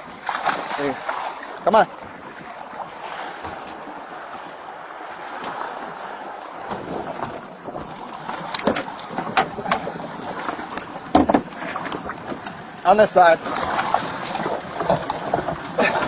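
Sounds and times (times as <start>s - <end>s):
water rushing around boat: 0.0s - 16.0s
knocks against hull: 3.4s - 3.8s, 6.6s - 12.5s, 13.4s - 16.0s.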